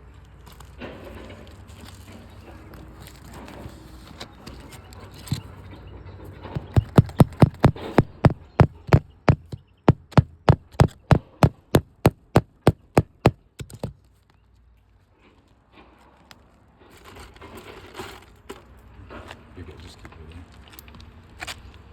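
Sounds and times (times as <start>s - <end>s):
hammer striking roof: 6.6s - 14.0s.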